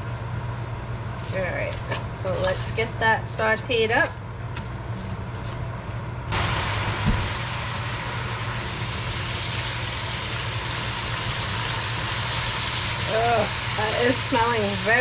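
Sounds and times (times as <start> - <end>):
vent fan humming: 0.0 - 15.0
vegetables sizzling in hot oil: 6.3 - 15.0.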